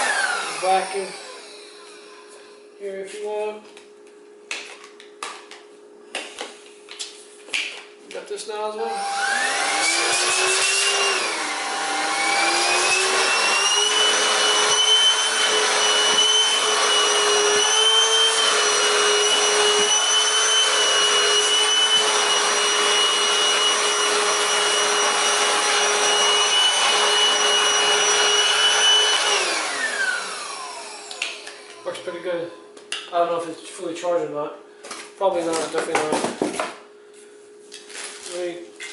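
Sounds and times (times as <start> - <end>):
vacuum motor whine: 0.0 - 2.7, 8.6 - 32.8.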